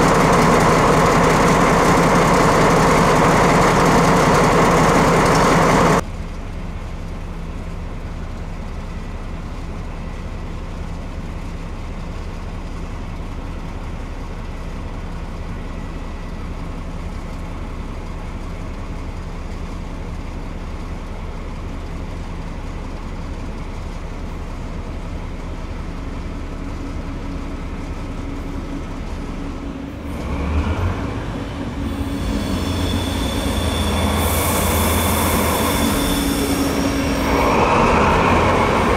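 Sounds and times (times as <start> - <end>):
low hum of standing train: 0.0 - 38.9
train engine rumble: 0.0 - 38.9
train wheel squeal: 31.6 - 38.9.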